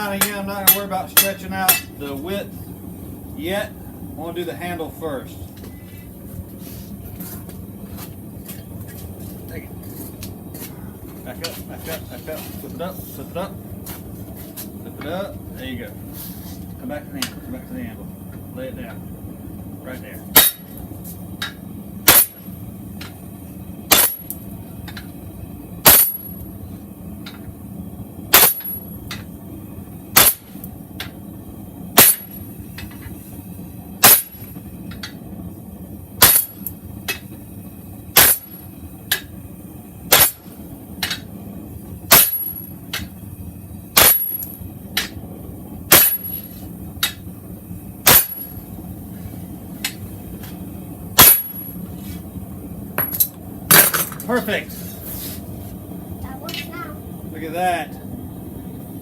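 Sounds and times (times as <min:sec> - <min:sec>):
hammer striking hot steel: 0:00.0 - 0:02.6, 0:17.1 - 0:19.1, 0:19.9 - 0:27.6, 0:28.3 - 0:31.3, 0:31.9 - 0:35.4, 0:36.1 - 0:48.9, 0:49.6 - 0:52.3, 0:52.9 - 0:54.7
steady low hum: 0:00.0 - 0:59.0.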